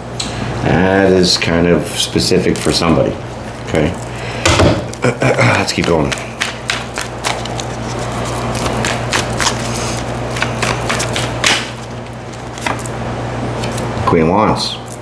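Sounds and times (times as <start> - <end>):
steady low hum: 0.0 - 15.0
cards being shuffled: 5.7 - 12.9.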